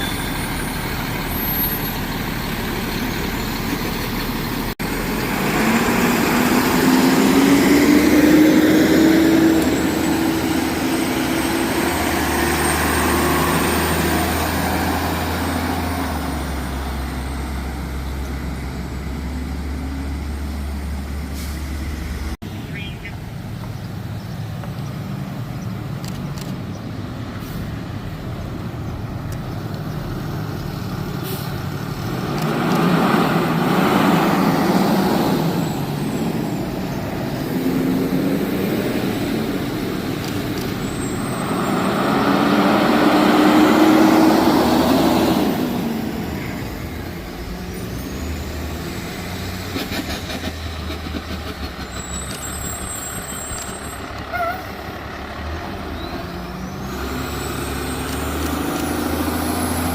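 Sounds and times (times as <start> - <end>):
fire trucks driving past: 0.0 - 59.9
steady traffic noise: 0.0 - 59.9.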